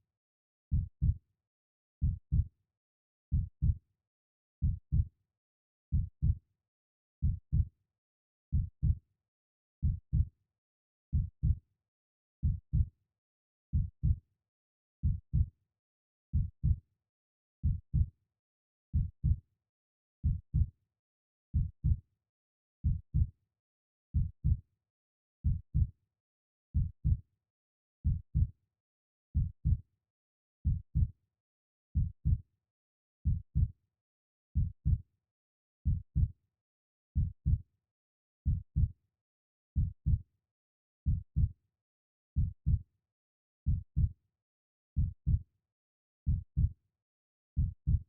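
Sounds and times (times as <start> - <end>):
slow heartbeat thumps: 33.2 - 33.7, 46.3 - 46.7.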